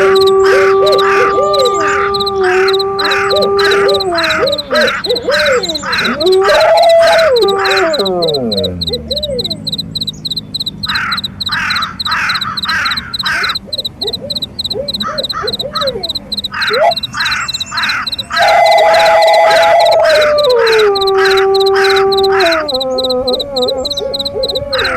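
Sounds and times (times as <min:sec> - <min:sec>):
crows cawing: 0:00.0 - 0:08.0, 0:10.8 - 0:13.6, 0:14.8 - 0:22.8
wolves howling: 0:00.0 - 0:09.9, 0:10.8 - 0:24.9
crickets chirping: 0:00.0 - 0:24.9.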